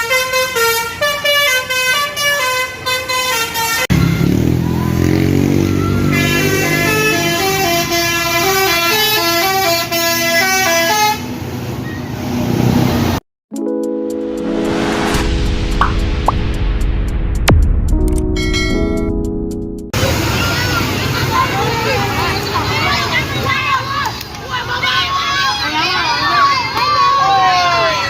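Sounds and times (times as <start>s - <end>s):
multi-tone bus horn tune: 0.0s - 4.6s, 5.2s - 11.4s.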